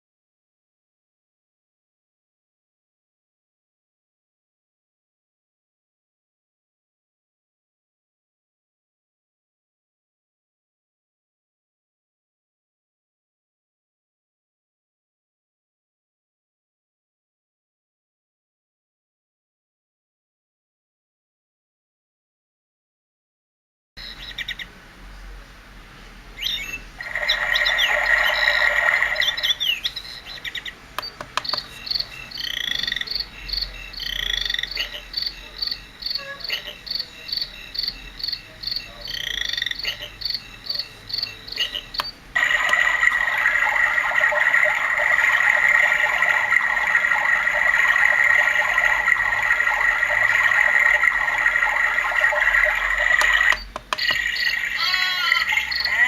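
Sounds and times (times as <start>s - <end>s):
insect-like chirping: 27.0s - 30.5s, 31.4s - 42.1s, 52.0s - 56.0s
clicks: 31.0s - 31.7s, 53.1s - 54.3s
cricket chorus: 31.4s - 42.1s, 54.3s - 56.0s.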